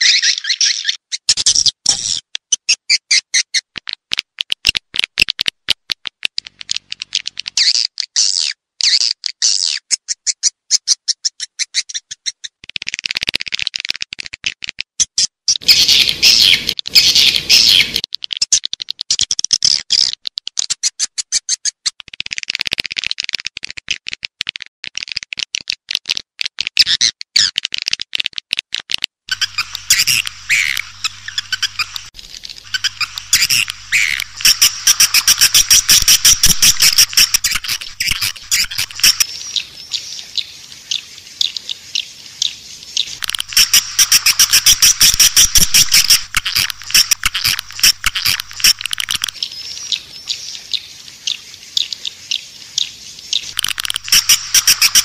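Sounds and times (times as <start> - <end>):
swiftlet calls: 29.3 - 40.1, 43.1 - 50.3, 53.5 - 55.0.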